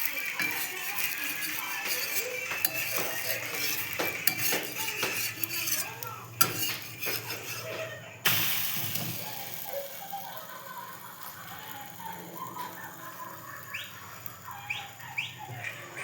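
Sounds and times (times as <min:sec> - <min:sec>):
metal spoon scraping pan: 0:00.0 - 0:10.0
food sizzling in hot fat: 0:00.0 - 0:16.0.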